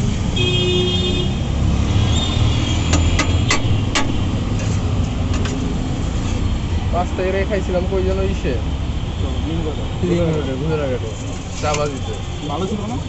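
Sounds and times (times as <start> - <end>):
city street traffic rumbling: 0.0 - 13.0
vehicle horn toot: 0.4 - 1.4.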